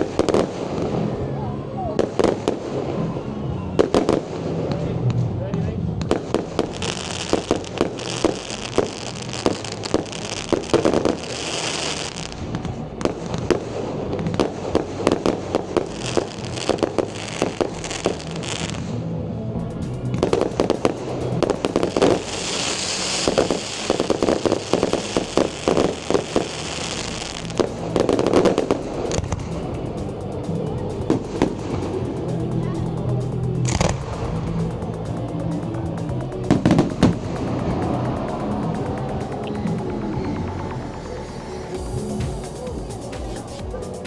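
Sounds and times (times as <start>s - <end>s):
fireworks bangs and pops: 0.0s - 1.0s, 20.0s - 32.5s, 33.6s - 39.8s
music: 0.0s - 44.0s
fireworks crackling fizz: 6.0s - 19.0s, 19.7s - 44.0s.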